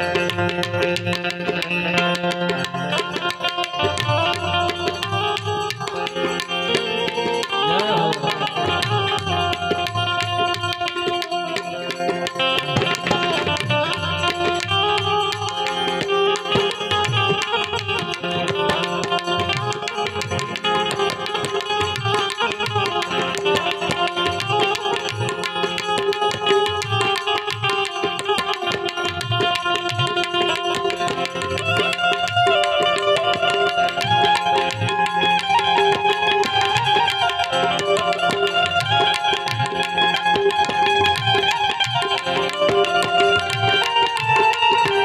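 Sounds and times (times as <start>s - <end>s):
harmonium melody: 0.0s - 45.0s
tabla rhythm: 0.0s - 45.0s.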